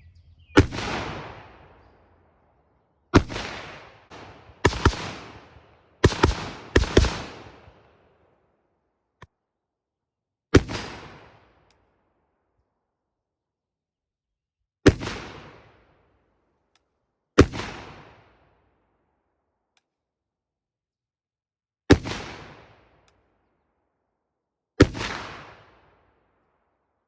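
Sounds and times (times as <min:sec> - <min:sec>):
pistol shots with echo: 0:00.6 - 0:02.3, 0:03.1 - 0:08.2, 0:24.8 - 0:25.9.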